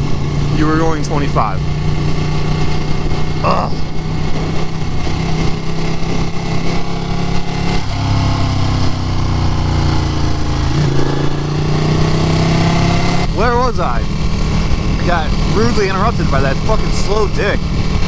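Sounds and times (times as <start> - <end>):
motorcycle engine running: 0.0 - 18.0
wind rushing: 10.7 - 16.7.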